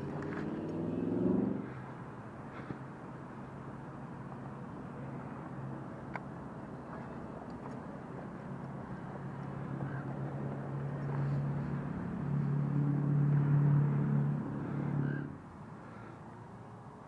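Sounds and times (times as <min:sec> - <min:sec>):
motor engine droning: 0:00.0 - 0:01.9, 0:08.1 - 0:16.1.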